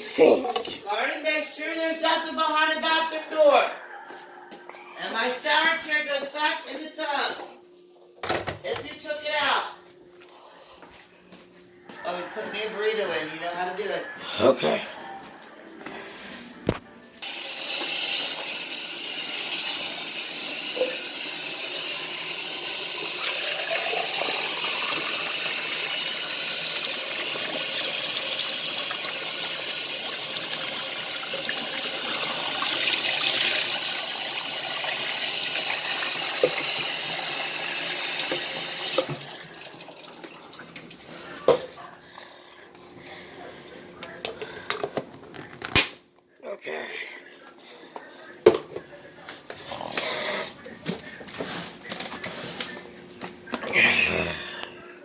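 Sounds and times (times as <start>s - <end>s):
tap water running into sink: 17.2s - 41.0s.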